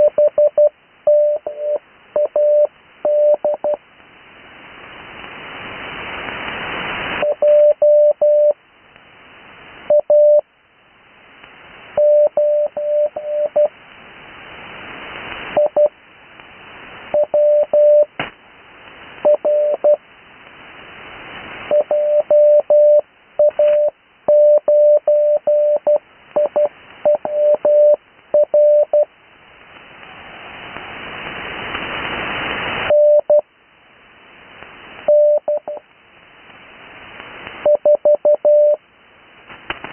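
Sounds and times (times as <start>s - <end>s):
morse code tone: 0.0s - 3.8s, 7.2s - 8.6s, 12.0s - 13.7s, 17.1s - 18.1s, 19.2s - 20.0s, 21.7s - 29.1s, 32.9s - 33.4s, 35.1s - 35.8s, 37.6s - 38.8s
radio static hiss: 0.0s - 39.9s.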